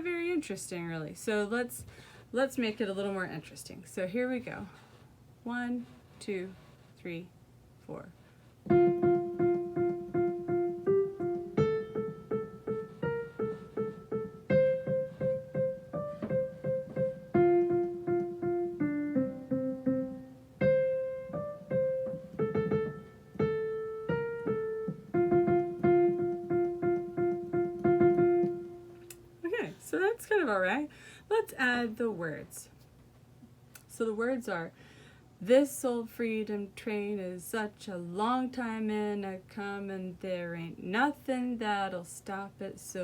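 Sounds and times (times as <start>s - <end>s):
keyboard playing simple melody: 8.7s - 29.4s.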